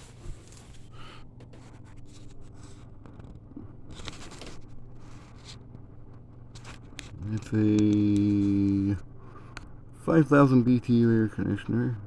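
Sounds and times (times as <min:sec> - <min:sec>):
scraping and rustling handling noise: 0:00.0 - 0:05.8
low steady hum: 0:00.0 - 0:12.0.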